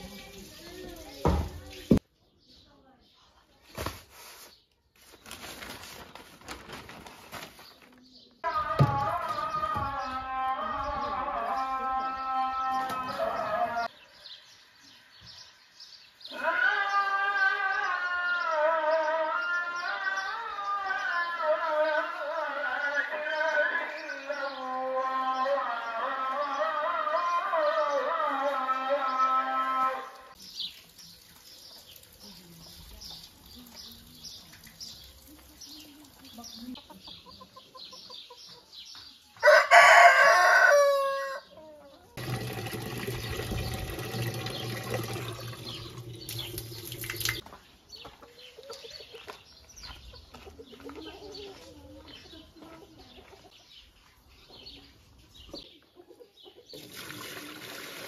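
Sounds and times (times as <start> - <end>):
farmyard sounds: 0.0 - 58.0
rooster crowing: 39.4 - 41.6.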